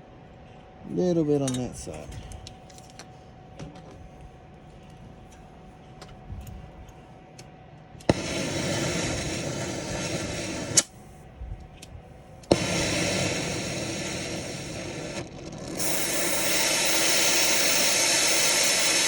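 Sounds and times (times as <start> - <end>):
torch igniter click: 8.0 - 11.0, 11.8 - 19.0
torch flame hissing: 8.1 - 11.6, 12.5 - 19.0.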